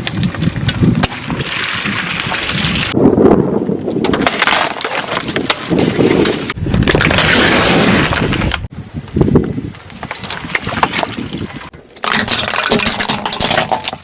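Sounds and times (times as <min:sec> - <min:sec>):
objects being crushed: 0:03.9 - 0:08.7, 0:10.0 - 0:14.0.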